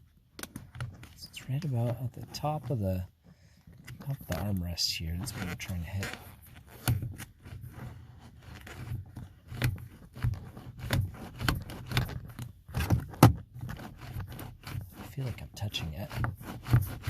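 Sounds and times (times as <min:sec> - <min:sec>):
plastic strip scraping and clicking: 0:05.2 - 0:17.0.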